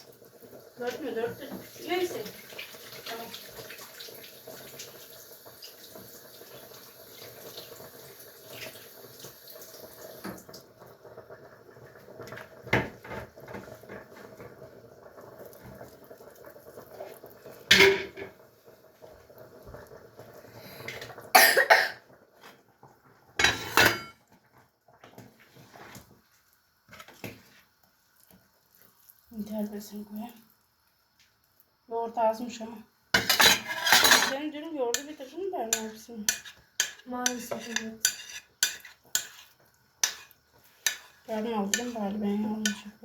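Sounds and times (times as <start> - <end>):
kitchen tap running: 0.0 - 22.1, 32.0 - 43.0
dishes clattering: 17.7 - 18.4, 23.4 - 24.2, 33.2 - 34.4
person coughing: 21.4 - 22.0.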